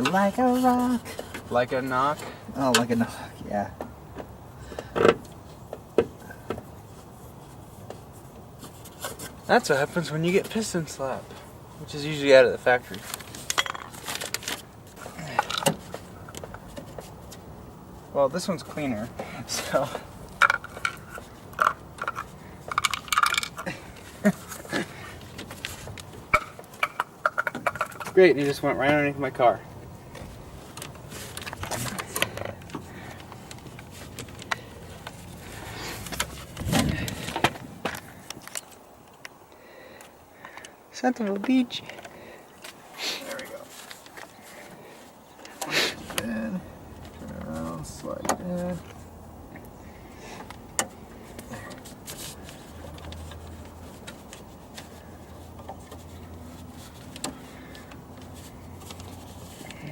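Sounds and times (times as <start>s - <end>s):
car door parts clicking and rattling: 4.2s - 6.7s, 15.3s - 17.1s, 20.2s - 28.2s, 36.0s - 39.3s.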